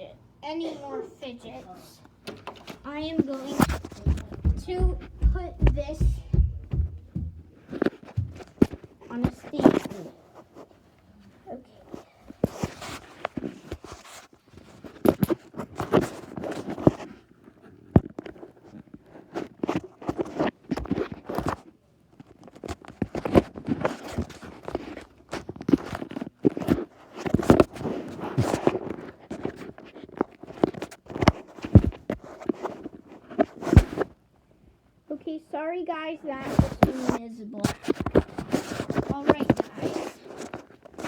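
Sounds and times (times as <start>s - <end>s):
phone handling bumps and taps: 3.5s - 8.8s, 36.5s - 37.2s.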